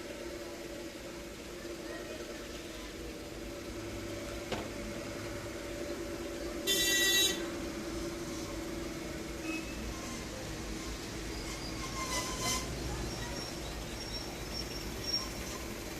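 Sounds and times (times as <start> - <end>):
high-pitched horn toot: 6.7 - 7.5.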